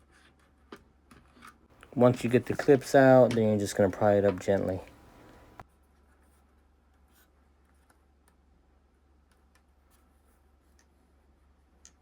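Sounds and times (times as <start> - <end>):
low steady hum: 1.8 - 5.6.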